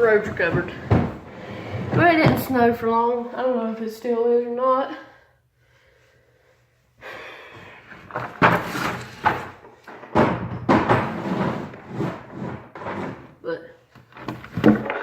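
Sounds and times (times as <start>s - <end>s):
scraping and rustling: 7.8s - 9.8s
sharp knocks and bangs: 8.2s - 11.7s.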